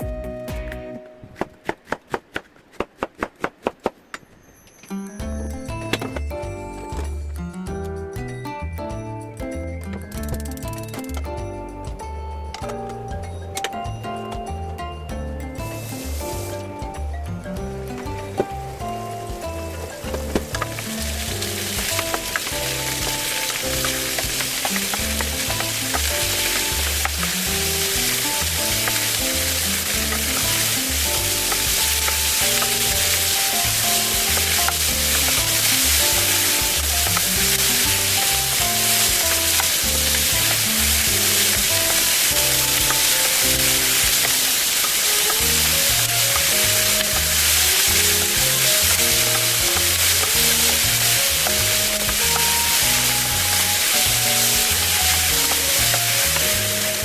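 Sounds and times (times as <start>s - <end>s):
background music with beat: 0.0s - 1.0s, 5.1s - 57.0s
food sizzling in frying pan: 15.6s - 17.0s, 17.7s - 57.0s.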